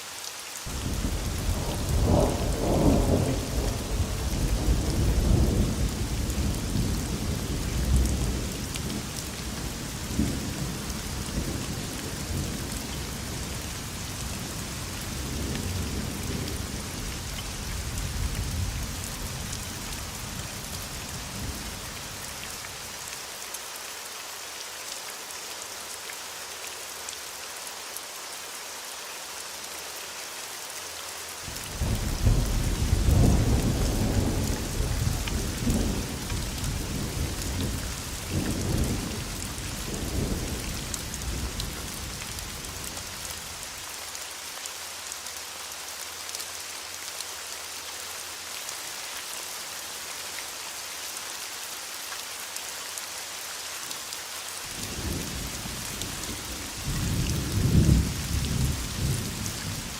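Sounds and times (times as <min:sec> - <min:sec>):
rain hissing: 0:00.0 - 0:59.9
thunder rumbling: 0:00.7 - 0:08.4, 0:31.8 - 0:40.7.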